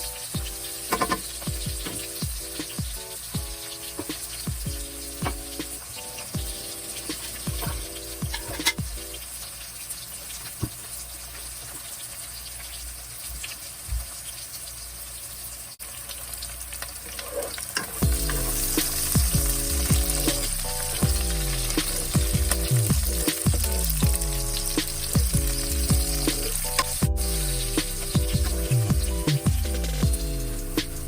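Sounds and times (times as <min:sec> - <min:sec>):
background music: 0:00.0 - 0:09.3, 0:18.0 - 0:31.0
food sizzling in a pan: 0:00.0 - 0:31.0.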